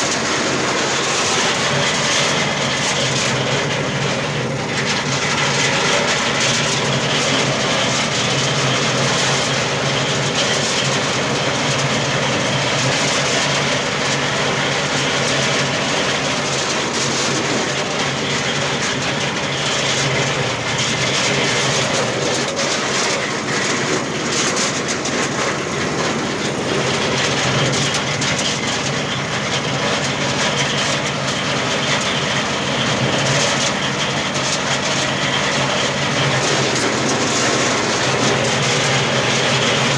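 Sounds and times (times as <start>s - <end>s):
machine running: 31.7s - 39.9s.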